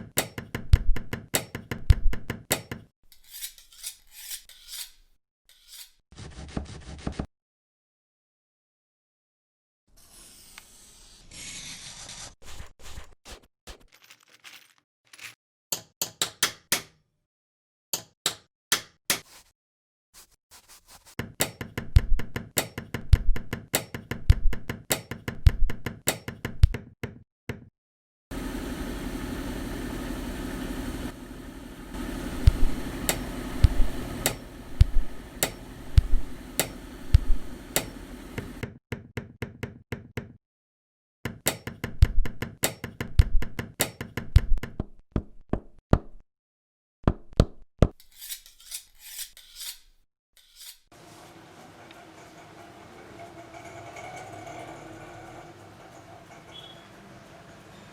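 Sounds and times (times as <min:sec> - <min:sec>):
steady hum: 0:28.4 - 0:38.6.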